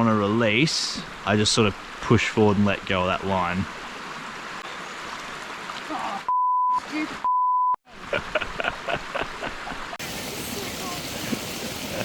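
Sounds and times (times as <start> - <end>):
stream water rushing: 0.2 - 7.2, 7.9 - 12.0
censor bleep tone: 6.3 - 7.8.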